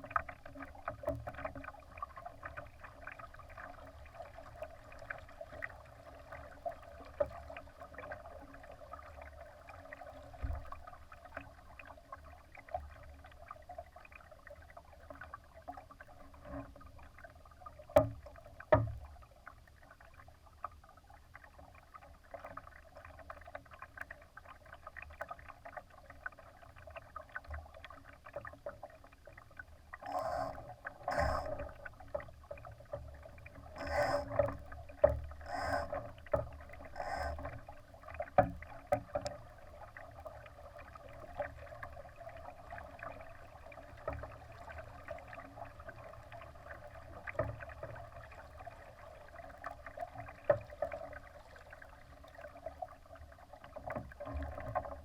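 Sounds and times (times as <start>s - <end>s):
water splashing against hull: 0.0s - 55.0s.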